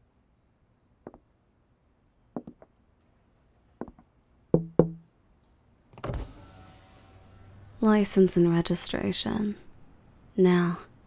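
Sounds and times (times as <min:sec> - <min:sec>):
knuckles knocking on car window: 0:04.6 - 0:05.0.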